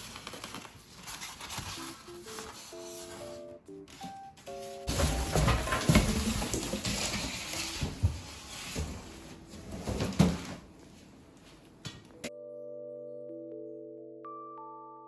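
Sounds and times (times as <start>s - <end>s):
packaging rustling: 0.0s - 10.6s.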